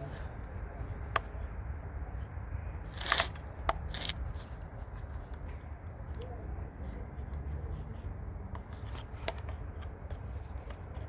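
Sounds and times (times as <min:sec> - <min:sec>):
scraping rustle: 0:00.0 - 0:00.4, 0:02.8 - 0:05.6.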